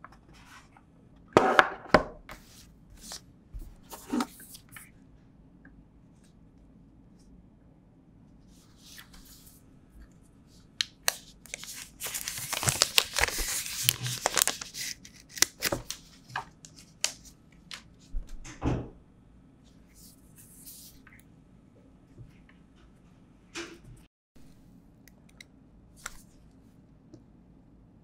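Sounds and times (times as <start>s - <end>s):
plastic packaging crinkling and tearing: 11.0s - 17.2s.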